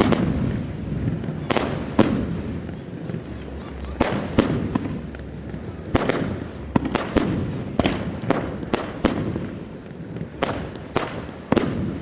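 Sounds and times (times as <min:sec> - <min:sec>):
firework shells bursting: 0:00.0 - 0:12.0.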